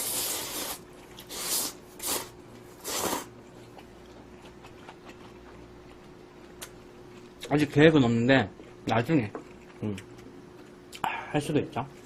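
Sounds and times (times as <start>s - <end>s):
slurping noodles: 0.0s - 3.3s
quiet chewing: 2.5s - 7.8s, 8.5s - 11.2s.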